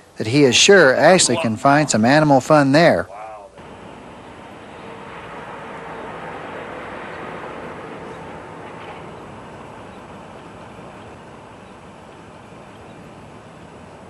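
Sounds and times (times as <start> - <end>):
steady rushing noise: 0.0 - 14.0.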